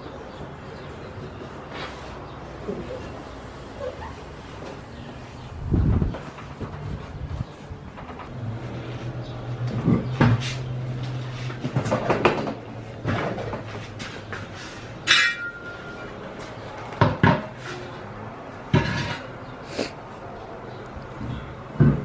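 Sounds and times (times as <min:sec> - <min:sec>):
sheet metal knocks and clinks: 0:15.0 - 0:15.9
short metallic ring: 0:15.1 - 0:16.1.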